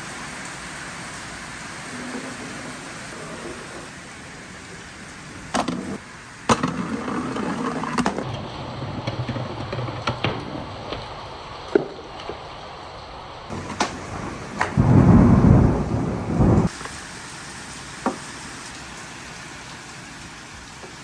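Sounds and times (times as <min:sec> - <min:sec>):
marbles rolling on wooden track: 0:05.6 - 0:08.3.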